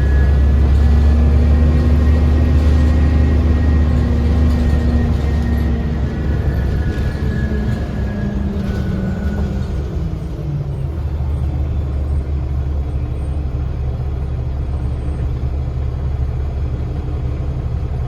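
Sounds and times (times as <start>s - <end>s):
bus engine droning: 0.0s - 18.0s.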